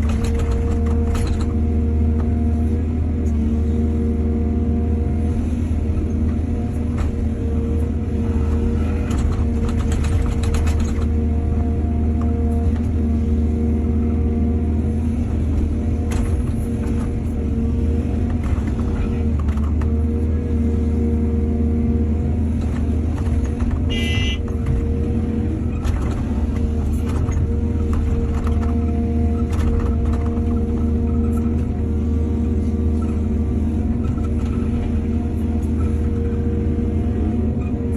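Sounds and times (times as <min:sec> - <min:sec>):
excavator diesel engine running: 0:00.0 - 0:37.9.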